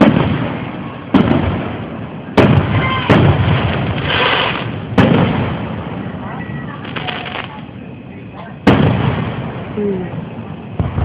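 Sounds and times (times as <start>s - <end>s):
fireworks booming with echo: 0.0s - 11.0s
fireworks hissing crackle: 0.0s - 11.0s.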